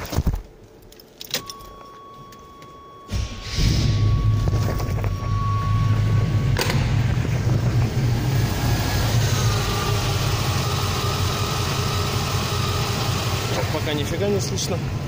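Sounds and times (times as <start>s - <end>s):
steady high tone: 1.4s - 12.8s
engine idling: 3.1s - 15.0s.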